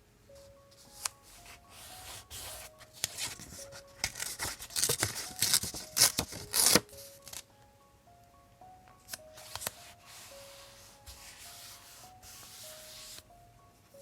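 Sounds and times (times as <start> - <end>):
soft background music: 0.0 - 14.0
paper rustling and scraping: 1.0 - 7.4.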